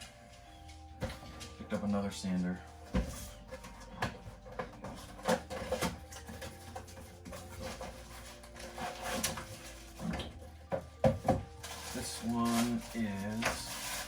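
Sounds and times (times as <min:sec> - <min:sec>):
packaging rustling: 0:02.7 - 0:10.7, 0:11.4 - 0:14.0
handling clicks and knocks: 0:02.8 - 0:13.7.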